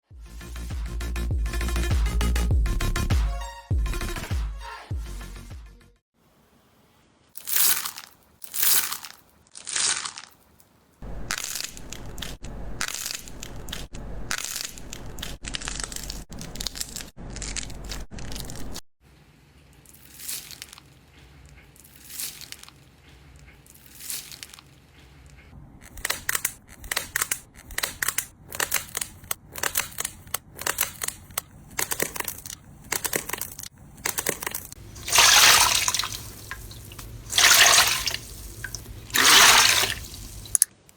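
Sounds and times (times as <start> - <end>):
slime crackling crunches: 7.4 - 10.6.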